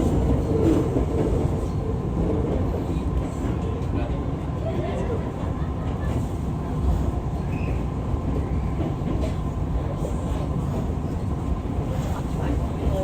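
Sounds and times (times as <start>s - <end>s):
metro train rumbling: 0.0s - 13.0s.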